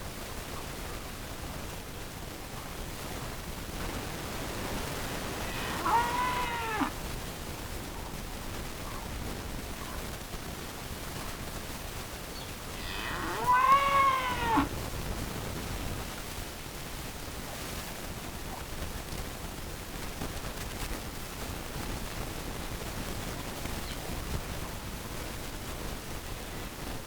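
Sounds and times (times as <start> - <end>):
faint outdoor hiss: 0.0 - 27.0
chicken calling: 5.4 - 7.0, 12.7 - 14.8.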